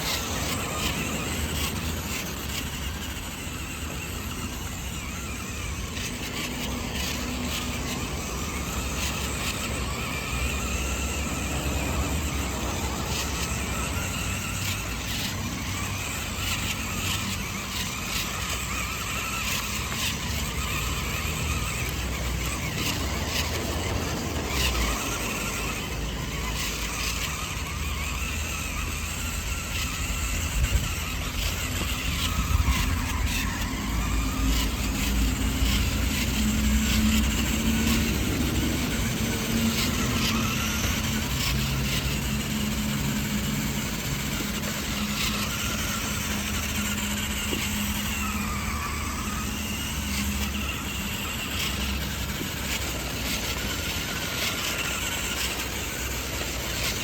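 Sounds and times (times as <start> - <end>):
low engine-like hum: 0.0 - 57.0
toy truck motor whirring: 0.0 - 57.0.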